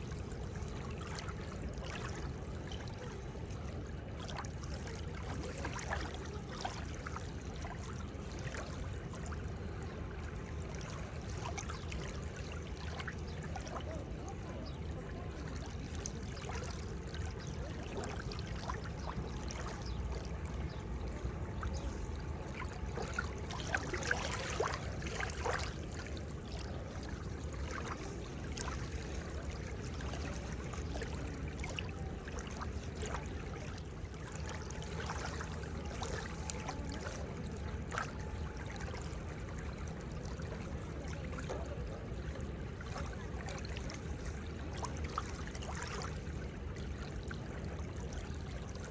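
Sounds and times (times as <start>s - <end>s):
small water splashes: 0.0s - 48.9s
water rushing at shoreline: 0.0s - 48.9s.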